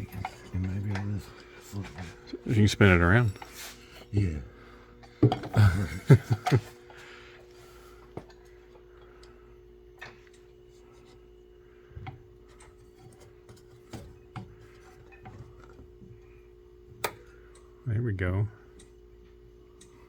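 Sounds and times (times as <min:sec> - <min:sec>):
metal tools knocking and clicking: 0:00.0 - 0:02.1
steady hum: 0:00.0 - 0:20.0.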